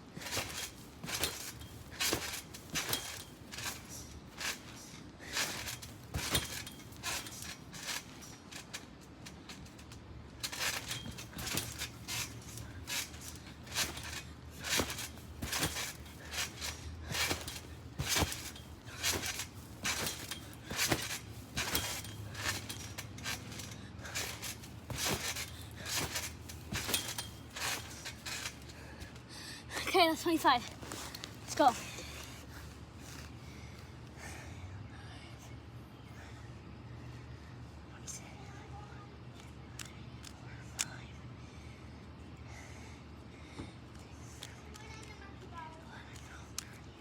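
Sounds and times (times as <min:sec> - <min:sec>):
feet landing on floor: 0:12.9 - 0:28.6.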